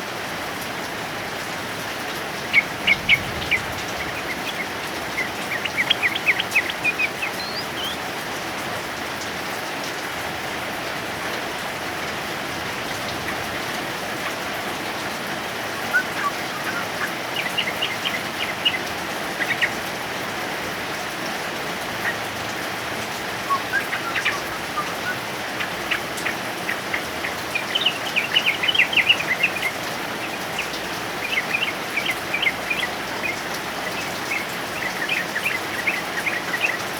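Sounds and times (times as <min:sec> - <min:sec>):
heavy rain falling: 0:00.0 - 0:36.9
bird singing rapid chattering notes: 0:02.2 - 0:08.2, 0:12.7 - 0:20.2, 0:21.5 - 0:36.9.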